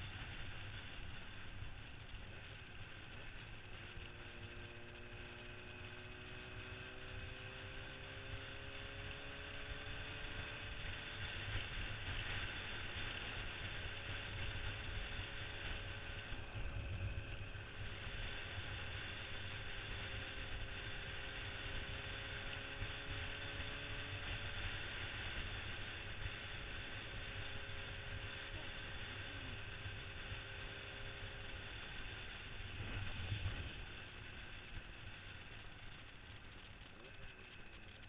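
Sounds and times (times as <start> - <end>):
two-stroke motorcycle engine running: 0.0 - 38.0.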